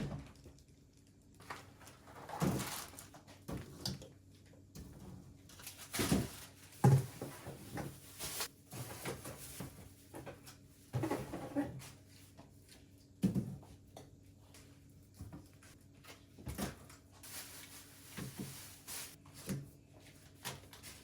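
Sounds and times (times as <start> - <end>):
packages rustling: 1.4 - 3.3, 5.5 - 9.9, 16.6 - 19.4.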